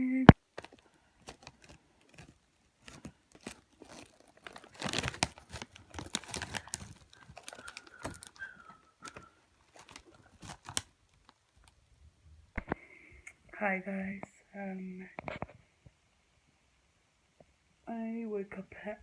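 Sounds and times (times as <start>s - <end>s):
rustling and crinkling handling: 0.3s - 12.8s.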